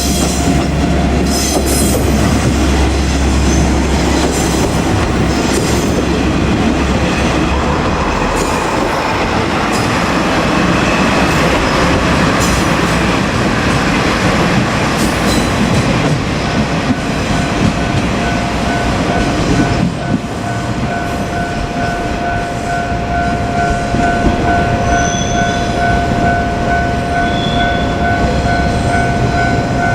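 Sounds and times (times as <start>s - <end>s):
train wheels clattering: 0.0s - 22.6s.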